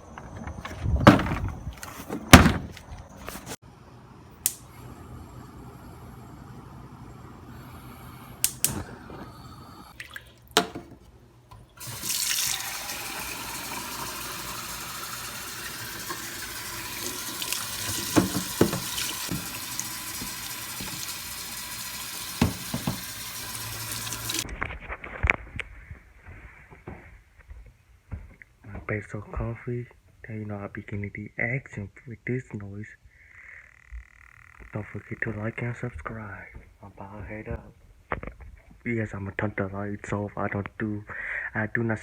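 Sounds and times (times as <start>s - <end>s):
tap water running into sink: 8.4s - 11.0s, 11.8s - 24.4s.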